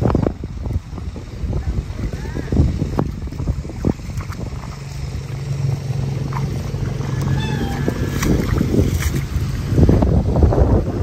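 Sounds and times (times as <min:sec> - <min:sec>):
low engine hum: 0:00.0 - 0:11.0
wind buffeting microphone: 0:00.0 - 0:11.0
faint animal call: 0:07.2 - 0:08.2.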